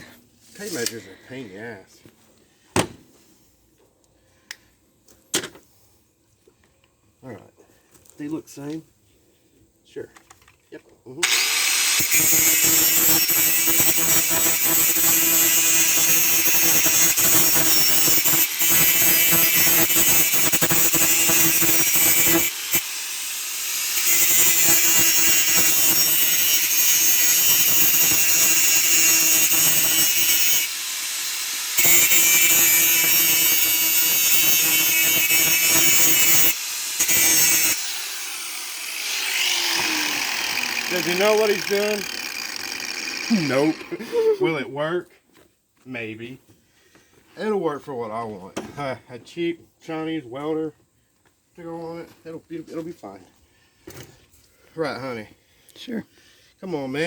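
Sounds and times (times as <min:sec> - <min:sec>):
power tool cutting metal pipe: 0:11.2 - 0:44.0.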